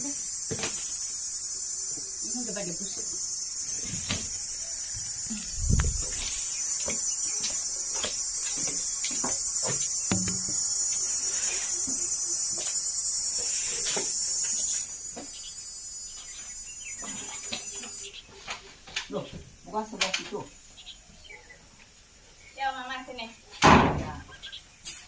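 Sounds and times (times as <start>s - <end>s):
high-pitched insect chorus: 0.0s - 25.0s
low thump: 10.1s - 10.7s.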